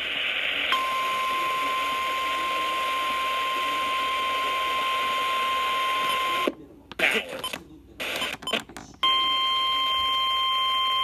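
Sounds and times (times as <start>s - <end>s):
radio hiss: 0.0s - 8.7s.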